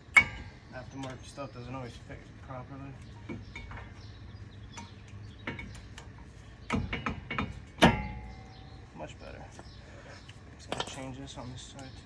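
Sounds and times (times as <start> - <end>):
metal taps: 3.0 - 4.1, 4.7 - 8.7
metal clips clicking and clinking: 10.7 - 12.0.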